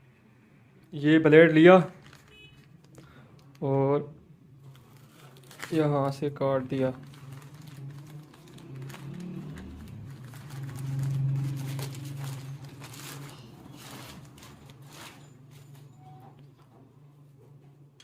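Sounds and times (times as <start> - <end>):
parcel packaging rustling: 1.7 - 3.6, 4.5 - 15.9.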